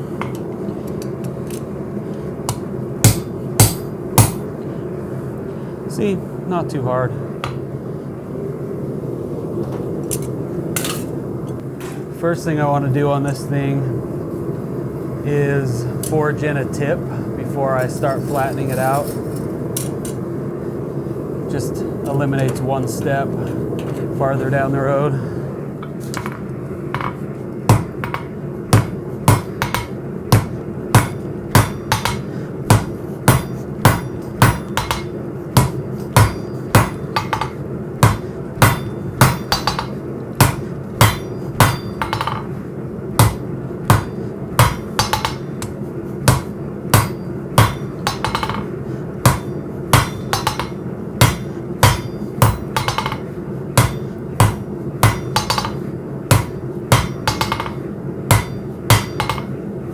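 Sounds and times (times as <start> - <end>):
hammer striking steel on anvil: 2.5 - 4.6, 27.0 - 42.6, 43.2 - 59.6
low hum: 13.5 - 59.9.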